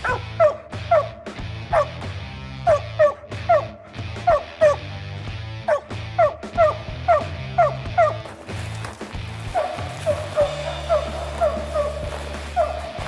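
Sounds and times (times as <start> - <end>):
dog barking sharply: 0.0 - 2.0, 2.7 - 4.8, 5.7 - 8.2
background music with low bass: 0.0 - 13.0.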